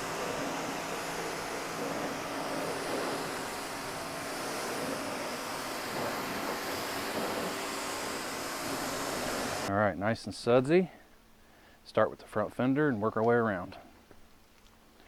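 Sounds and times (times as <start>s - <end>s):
pressure washer spray hiss: 0.0s - 9.7s
washer motor hum: 0.0s - 9.7s.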